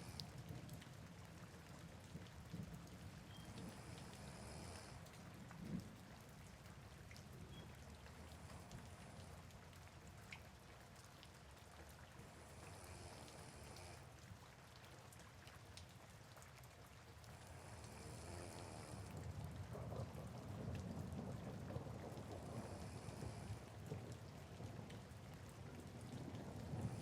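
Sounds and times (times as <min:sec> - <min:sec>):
scattered raindrops: 0:00.0 - 0:27.0
soft rain hissing: 0:00.0 - 0:27.0
faint high hiss: 0:17.4 - 0:19.1.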